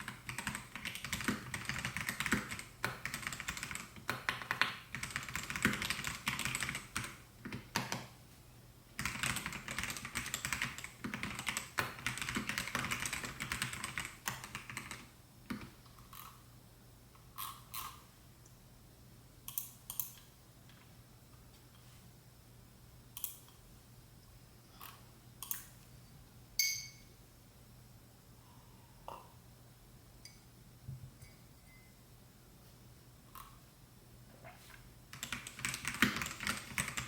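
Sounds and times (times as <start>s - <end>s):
typing on mechanical keyboard: 0.0s - 8.1s, 9.0s - 16.3s, 35.1s - 37.0s.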